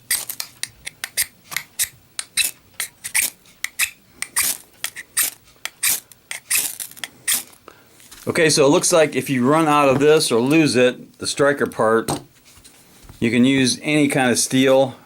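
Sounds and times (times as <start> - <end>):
knife scraping ferrocerium rod: 0.0 - 7.6.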